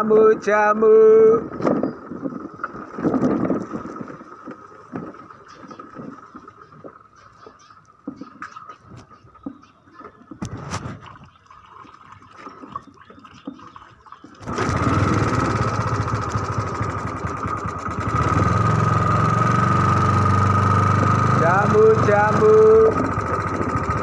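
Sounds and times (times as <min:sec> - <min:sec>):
small engine running: 0:14.4 - 0:24.0.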